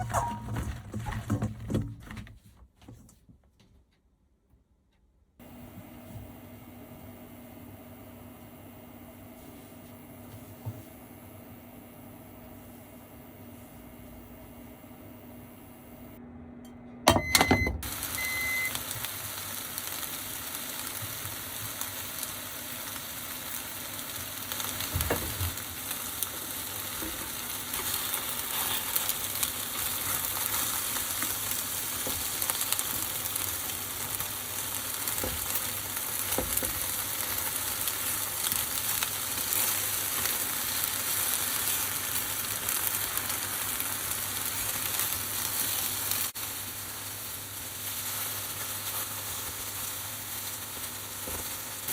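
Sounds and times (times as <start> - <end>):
food sizzling in hot oil: 17.8 - 51.9.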